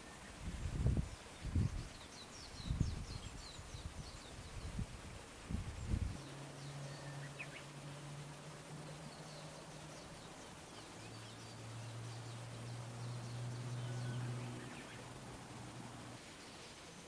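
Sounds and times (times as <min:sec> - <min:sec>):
small birds chirping: 0:00.0 - 0:17.0
steady low hum: 0:03.9 - 0:16.2.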